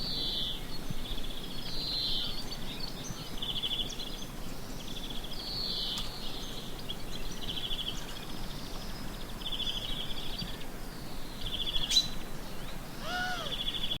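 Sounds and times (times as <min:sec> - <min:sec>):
birds trilling: 0:12.8 - 0:14.0
low arched bird call: 0:12.9 - 0:14.0.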